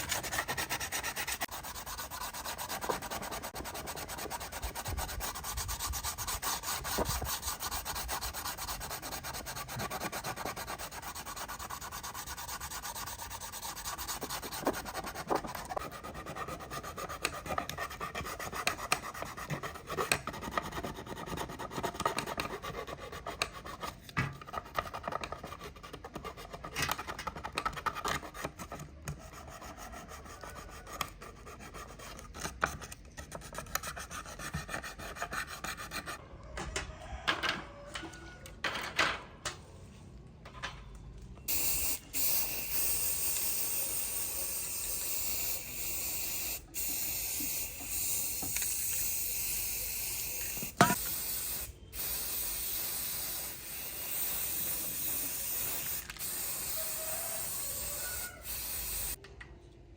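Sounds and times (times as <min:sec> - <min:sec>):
hand sanding strokes: 0:00.0 - 0:21.9.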